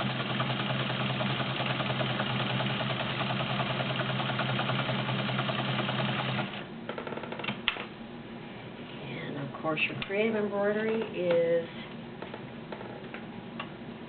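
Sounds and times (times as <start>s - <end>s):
sewing machine running: 0.0s - 6.7s.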